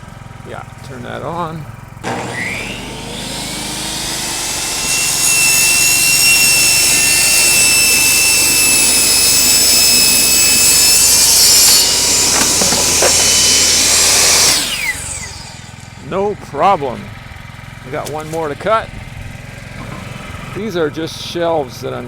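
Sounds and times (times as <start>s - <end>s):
generator running: 0.0s - 22.0s
saw blade spinning free: 2.0s - 16.0s
table saw cutting wood: 2.0s - 16.9s.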